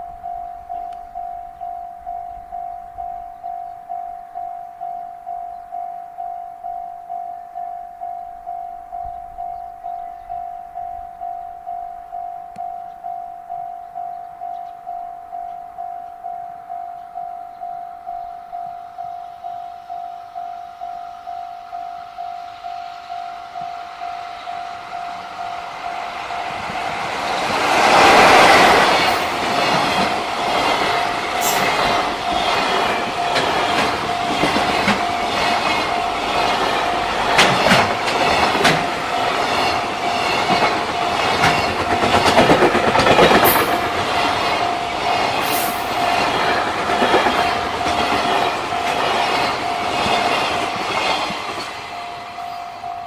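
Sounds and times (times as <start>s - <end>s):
freight train passing: 0.0s - 53.0s
level crossing warning bell: 0.0s - 53.0s
wagons clattering over rail joints: 26.6s - 51.9s.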